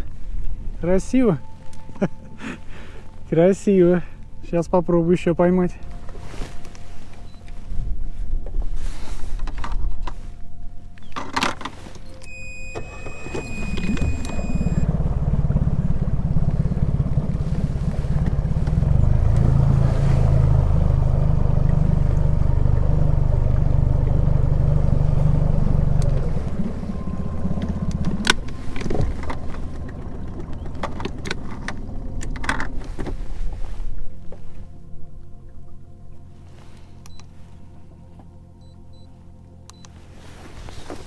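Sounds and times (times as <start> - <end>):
outboard motor humming: 0.0 - 41.0
short high electronic beep: 12.1 - 14.8.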